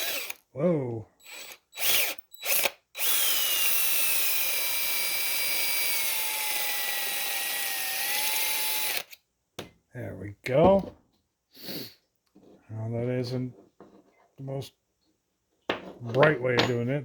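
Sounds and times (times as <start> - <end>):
power drill whining: 0.0 - 0.4, 1.2 - 9.2.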